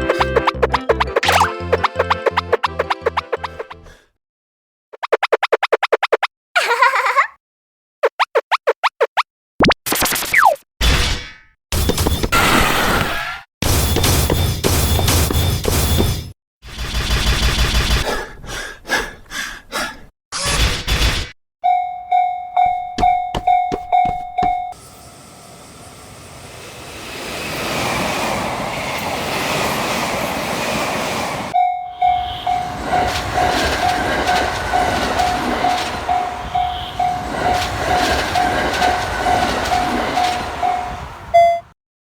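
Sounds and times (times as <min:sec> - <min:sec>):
railroad crossing warning bell: 0:21.6 - 0:25.0, 0:31.5 - 0:41.7
train passing with rail noise: 0:23.5 - 0:41.6.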